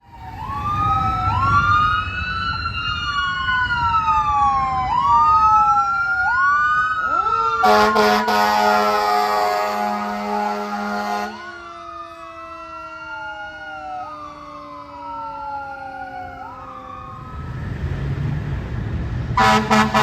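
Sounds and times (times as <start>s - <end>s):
emergency sirens wailing: 0.0s - 20.0s
air horn blaring: 7.6s - 11.7s, 19.4s - 20.0s.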